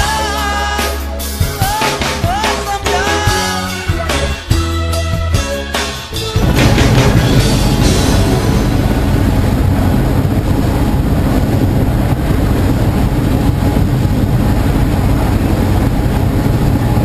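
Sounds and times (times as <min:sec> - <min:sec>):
boat engines droning: 0:06.1 - 0:17.0
water rushing: 0:06.4 - 0:17.0.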